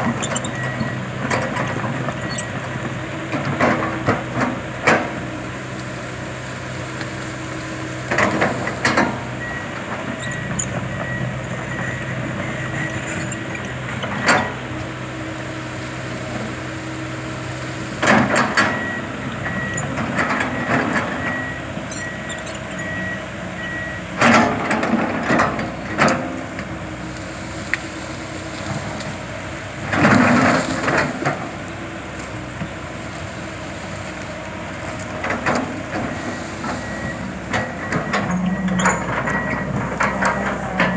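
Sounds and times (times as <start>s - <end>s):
excavator running: 0.0s - 40.9s
excavator digging bursts: 7.4s - 40.9s
high regular beeping: 18.7s - 24.0s, 36.0s - 40.9s.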